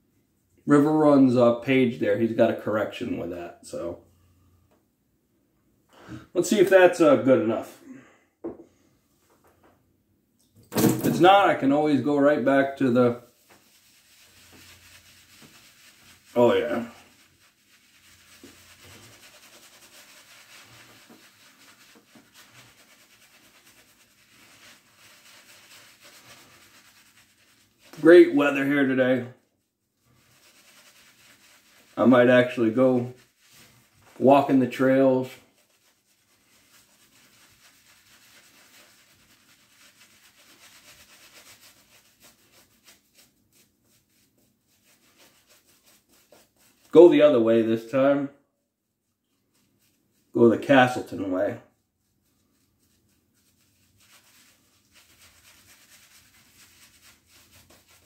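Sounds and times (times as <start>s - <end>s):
shaving brush rubbing on face: 11.2s - 48.1s, 49.2s - 58.0s.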